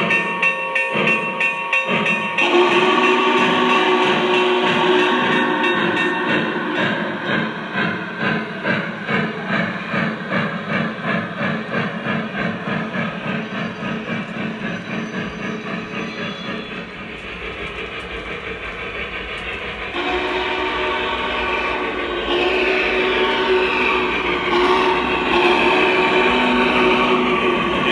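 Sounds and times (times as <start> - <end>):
multi-tone locomotive whistle: 0.0 - 10.6, 12.0 - 18.8, 19.6 - 27.9
steam locomotive exhaust chuffs: 0.0 - 27.9.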